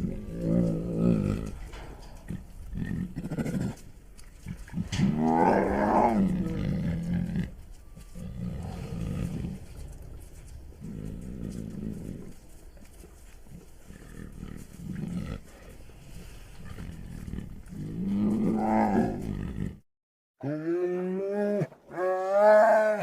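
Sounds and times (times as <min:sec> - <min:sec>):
bear growling: 0:00.0 - 0:03.8, 0:04.5 - 0:07.6, 0:13.9 - 0:19.8.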